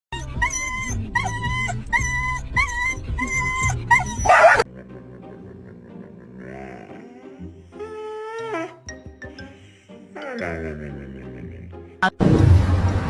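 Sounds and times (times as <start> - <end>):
dog whining yips: 0.2 - 4.7, 8.0 - 8.8.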